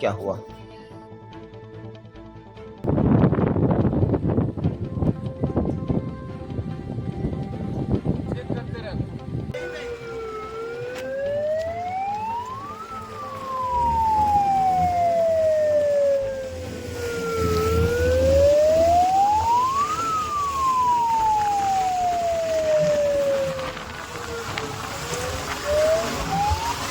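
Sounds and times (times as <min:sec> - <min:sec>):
emergency siren wailing: 0:09.6 - 0:26.9.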